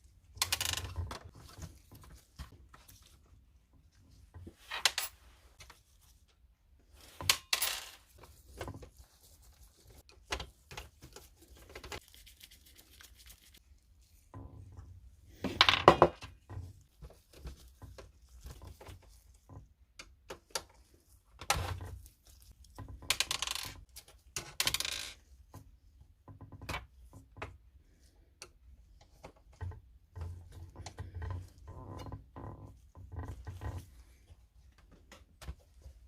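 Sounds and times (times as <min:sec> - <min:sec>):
metal and plastic parts rattling: 0:00.4 - 0:02.8.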